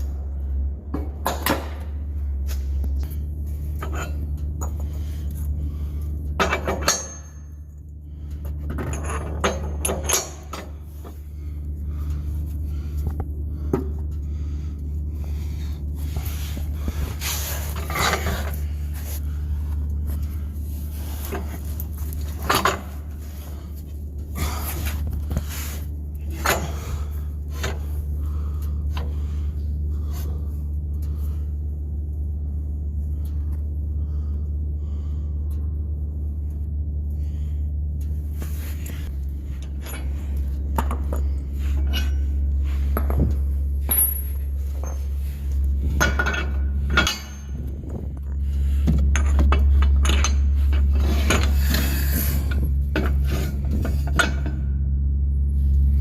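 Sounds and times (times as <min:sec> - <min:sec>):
steady low hum: 0:00.0 - 0:56.0
tools and parts clinking: 0:06.3 - 0:11.2, 0:19.8 - 0:24.0, 0:38.8 - 0:55.0.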